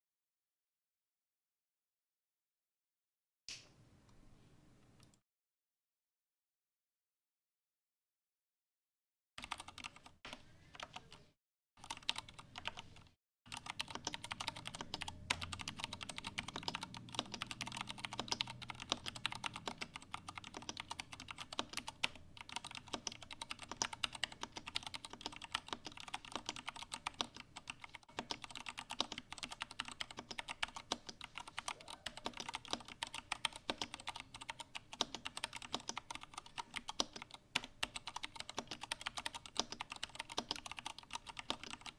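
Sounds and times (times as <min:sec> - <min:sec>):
mechanical keyboard typing: 0:09.4 - 0:10.2, 0:11.8 - 0:41.9.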